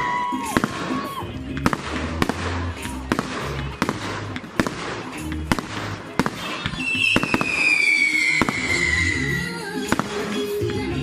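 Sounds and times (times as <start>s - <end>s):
fireworks bangs and crackles: 0.0s - 11.0s
falling firework whistle: 6.2s - 10.6s.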